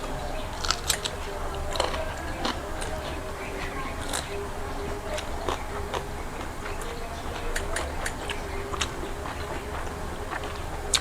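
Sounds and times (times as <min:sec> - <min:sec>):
faint low hum: 0:00.0 - 0:11.0
chewing clicks and smacks: 0:00.6 - 0:03.2, 0:04.0 - 0:04.4, 0:07.4 - 0:11.0.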